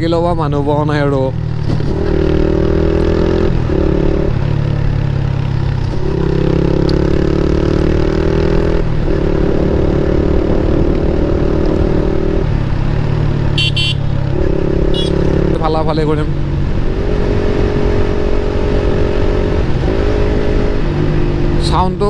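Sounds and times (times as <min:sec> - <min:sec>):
motorcycle engine running: 0:01.3 - 0:21.7.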